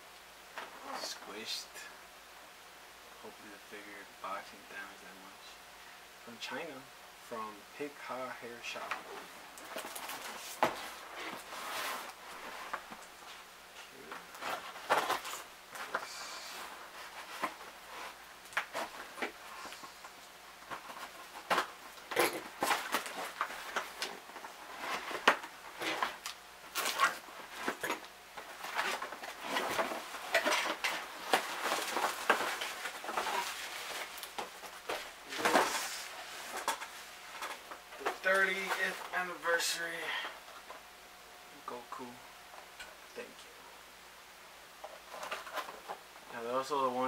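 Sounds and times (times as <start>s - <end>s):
packaging rustling and crinkling: 9.0s - 13.4s, 14.0s - 39.1s.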